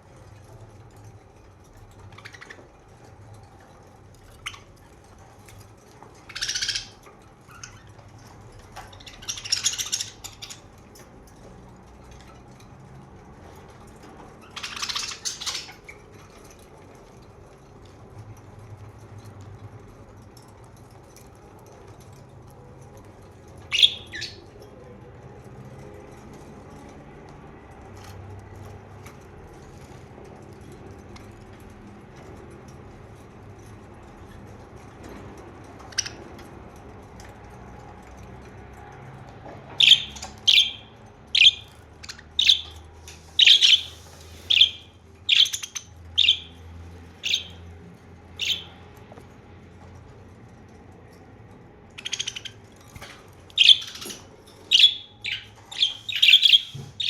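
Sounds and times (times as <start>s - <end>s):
budgerigars chirping: 6.2s - 7.8s, 8.8s - 10.8s, 14.4s - 16.1s, 23.7s - 24.5s, 39.8s - 46.6s, 47.2s - 47.6s, 48.4s - 48.8s, 52.0s - 57.0s.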